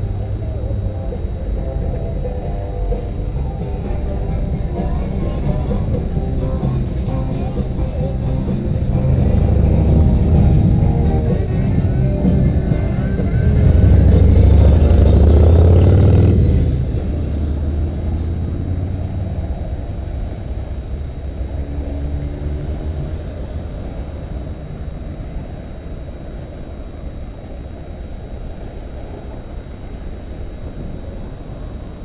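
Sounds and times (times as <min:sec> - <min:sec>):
diesel locomotive engine: 0:00.0 - 0:27.1
train cars rumbling by: 0:01.8 - 0:18.5.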